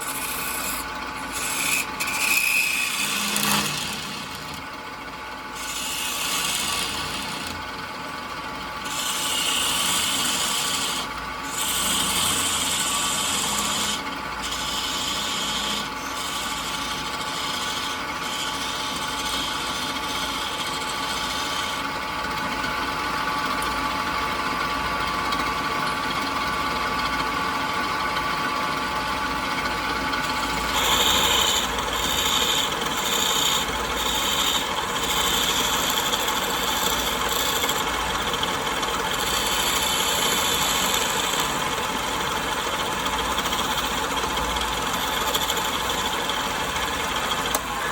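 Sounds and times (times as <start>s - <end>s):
sanding wood: 0.0s - 4.6s, 5.6s - 7.6s, 8.9s - 21.9s, 30.6s - 47.9s
steady machine hum: 0.0s - 47.9s.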